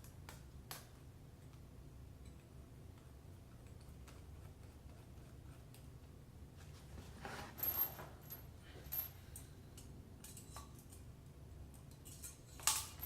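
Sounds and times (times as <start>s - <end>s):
metal parts clinking: 11.8s - 13.0s.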